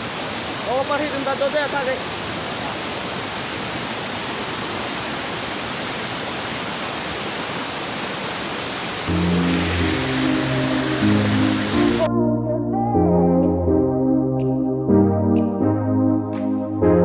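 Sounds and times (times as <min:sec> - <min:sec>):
waterfall rushing: 0:00.0 - 0:12.1
background music with low notes: 0:09.1 - 0:17.0.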